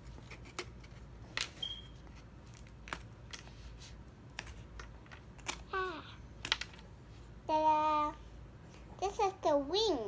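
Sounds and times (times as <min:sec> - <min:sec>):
wooden pieces clicking and snapping: 0:06.4 - 0:06.8.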